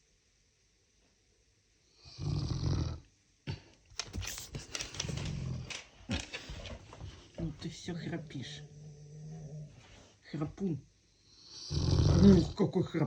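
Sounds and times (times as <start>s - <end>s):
dog snoring loudly: 2.0s - 3.1s, 11.5s - 12.6s.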